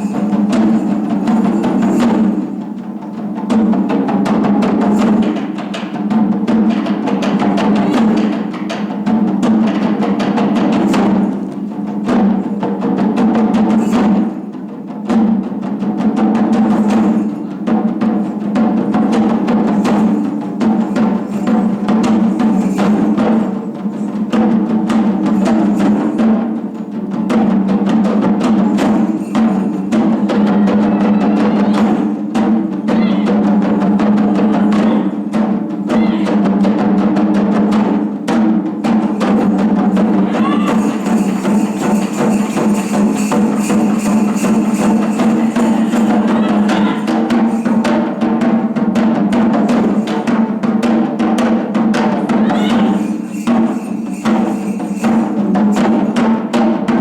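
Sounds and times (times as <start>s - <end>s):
taiko drums ensemble: 0.0s - 57.0s.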